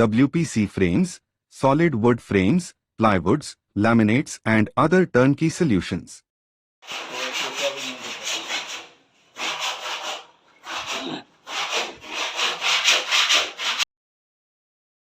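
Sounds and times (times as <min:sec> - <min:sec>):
hand saw cutting wood: 0:06.8 - 0:13.9.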